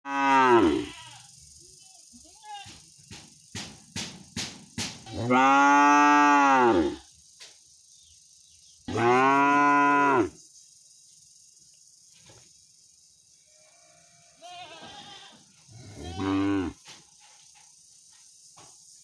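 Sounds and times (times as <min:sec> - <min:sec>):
cow mooing: 0:00.1 - 0:00.9, 0:05.1 - 0:07.0, 0:15.8 - 0:16.8.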